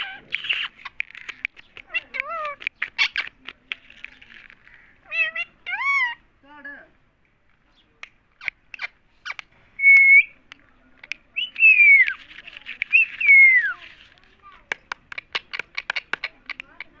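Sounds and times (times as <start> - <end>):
parrot calling: 0.0 - 3.4, 4.7 - 6.2
parrot squawk: 5.0 - 6.2.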